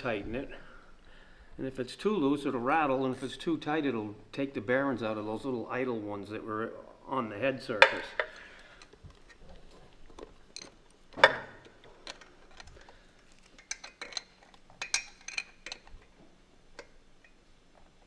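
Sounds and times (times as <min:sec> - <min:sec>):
metal tools clinking on engine parts: 0:07.8 - 0:17.4.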